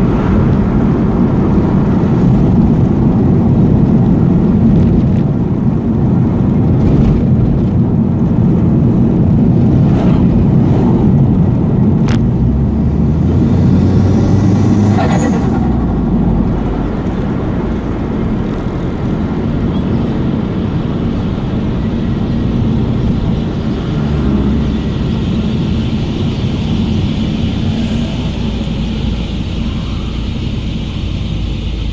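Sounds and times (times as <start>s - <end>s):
car engine running loudly: 0.0s - 31.9s
turbo whistling sweep: 9.8s - 18.2s, 18.8s - 31.9s.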